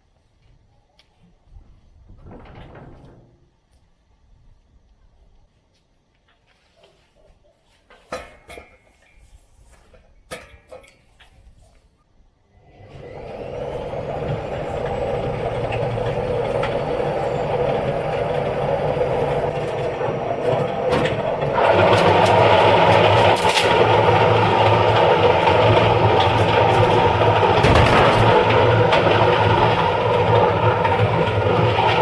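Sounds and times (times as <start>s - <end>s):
washing machine spinning: 12.7s - 32.0s.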